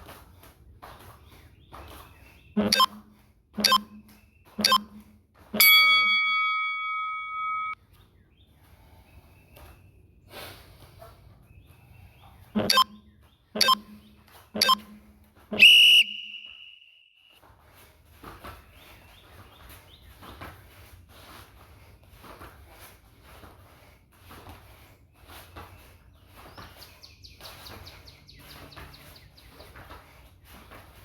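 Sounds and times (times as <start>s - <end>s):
long high timer beep: 2.6s - 3.0s, 3.6s - 5.0s, 5.6s - 7.8s, 12.6s - 13.0s, 13.6s - 16.8s
timer beeps: 2.6s - 3.0s, 3.6s - 7.8s, 12.6s - 16.9s.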